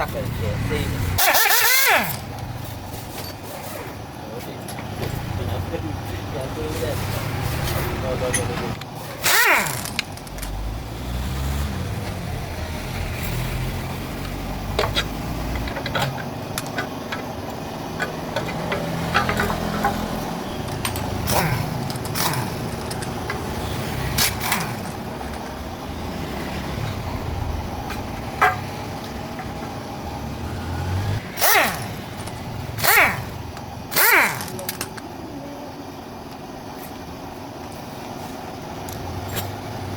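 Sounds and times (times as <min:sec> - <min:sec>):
hand tools knocking on metal: 0:14.7 - 0:23.5, 0:27.9 - 0:29.8
low rumble: 0:24.4 - 0:30.6.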